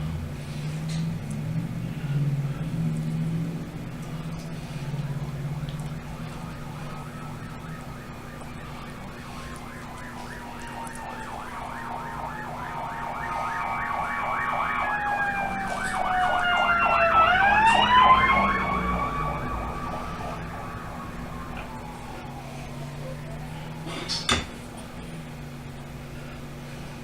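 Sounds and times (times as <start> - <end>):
siren wail: 2.2 - 25.6
siren yelp: 4.6 - 25.2.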